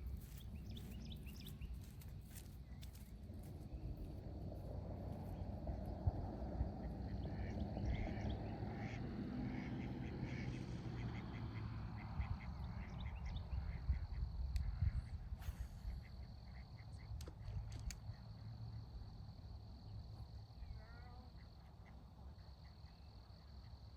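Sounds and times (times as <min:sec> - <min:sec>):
low rumble: 0:03.0 - 0:16.3
quacking animal calls: 0:07.1 - 0:14.0.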